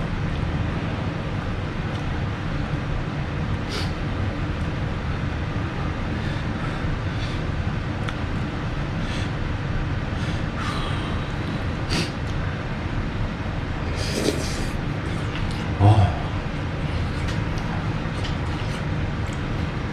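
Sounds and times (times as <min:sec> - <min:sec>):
low background rumble: 0:00.0 - 0:19.9
slurping noodles: 0:11.9 - 0:12.3, 0:13.9 - 0:15.8.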